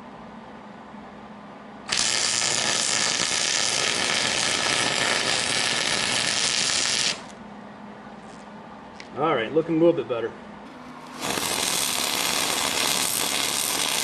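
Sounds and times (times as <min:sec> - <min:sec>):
welding arc hissing: 0:01.9 - 0:07.4, 0:10.9 - 0:14.0.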